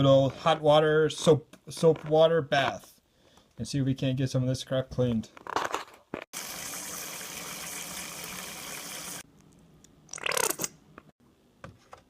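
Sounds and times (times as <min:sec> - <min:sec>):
water running from a tap: 0:06.4 - 0:09.2.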